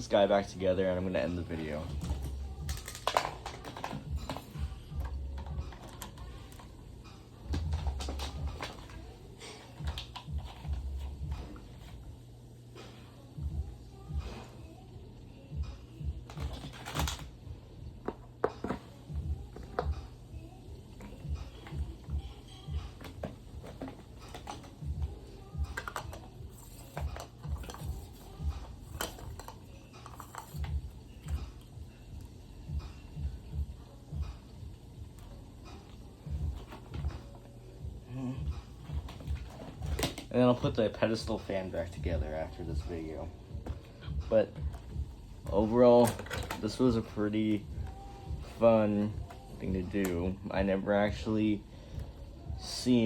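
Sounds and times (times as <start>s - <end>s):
fan parts clicking and clinking: 21.0s - 31.5s.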